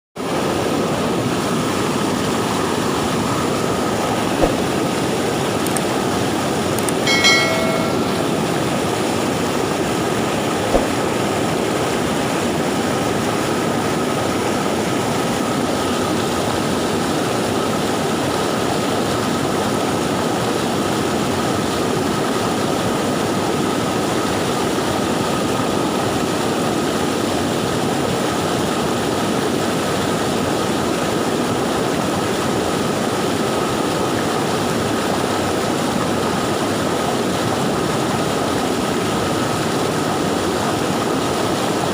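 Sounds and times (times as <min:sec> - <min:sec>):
river rushing: 0:00.2 - 0:25.2.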